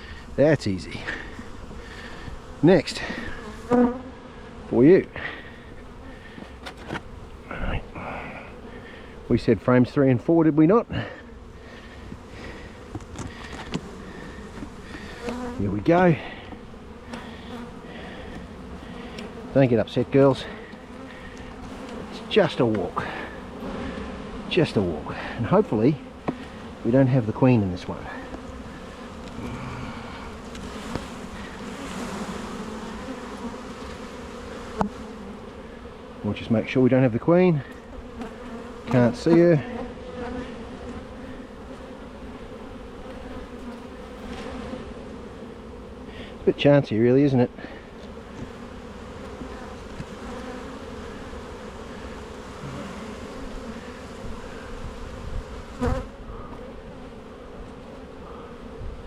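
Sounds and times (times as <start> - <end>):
honeybees buzzing: 0.0 - 59.0.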